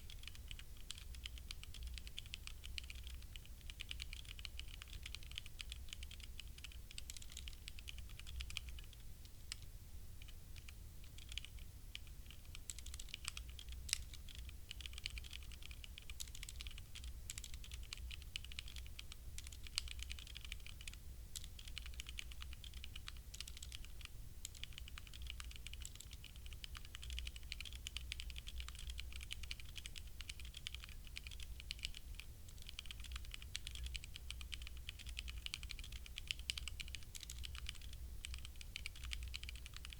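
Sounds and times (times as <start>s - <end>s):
mechanical keyboard typing: 0.0s - 9.6s, 10.2s - 39.9s
faint low hum: 0.0s - 39.9s.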